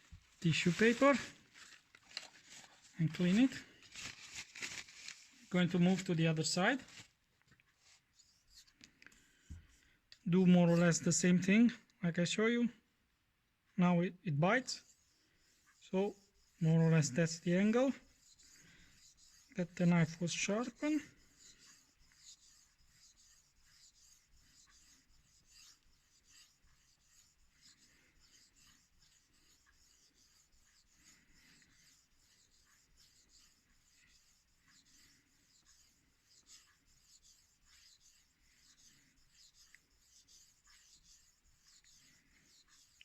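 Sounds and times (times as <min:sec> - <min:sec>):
knife scraping on whetstone: 0:18.1 - 0:43.0.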